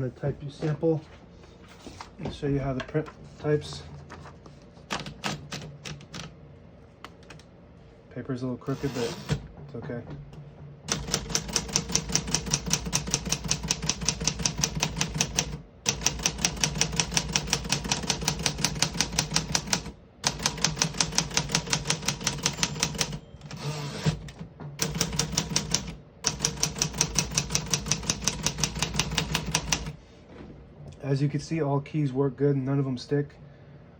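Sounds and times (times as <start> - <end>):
typewriter typing: 4.9 - 6.3, 8.7 - 9.4, 10.9 - 30.0
typewriter carriage rasping slide: 8.7 - 9.4, 22.4 - 25.8.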